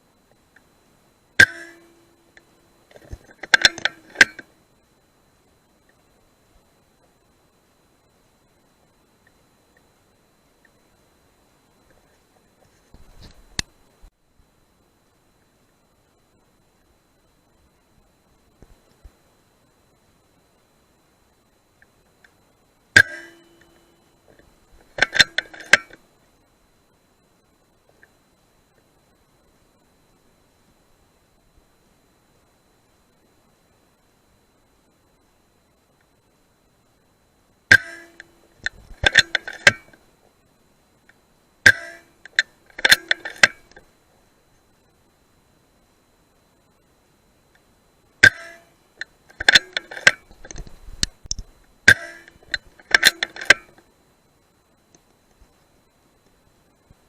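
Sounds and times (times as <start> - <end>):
sharp metallic clank: 1.4 - 2.0, 23.0 - 23.8, 37.7 - 38.3, 41.7 - 42.1, 48.2 - 48.7, 51.9 - 53.7
metallic clicks and knocks: 2.9 - 4.5, 23.0 - 26.0, 37.7 - 40.0, 41.6 - 43.8, 48.2 - 53.8
quiet rifle shots: 37.7 - 40.0, 41.6 - 43.9, 49.3 - 53.8.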